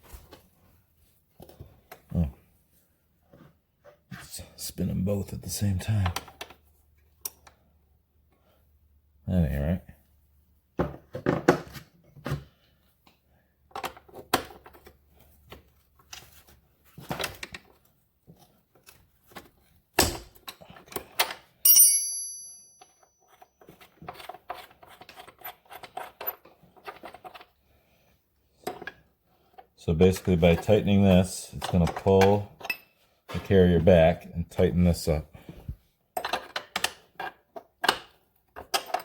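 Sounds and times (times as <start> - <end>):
metal tool striking and ringing: 21.7 - 23.1.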